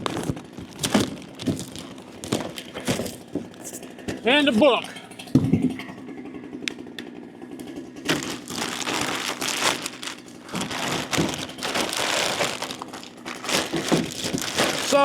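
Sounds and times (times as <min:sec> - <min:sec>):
packaging crinkling and rustling: 0:00.0 - 0:04.3, 0:08.0 - 0:15.0
chainsaw idling: 0:06.2 - 0:15.0.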